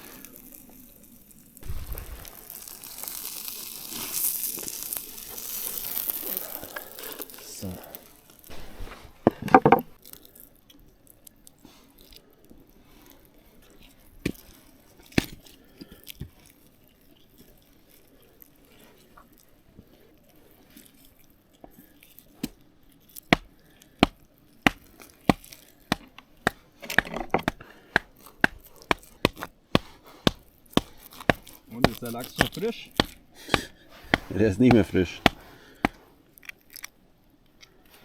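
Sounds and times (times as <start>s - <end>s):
knife chopping on cutting board: 27.4s - 36.0s.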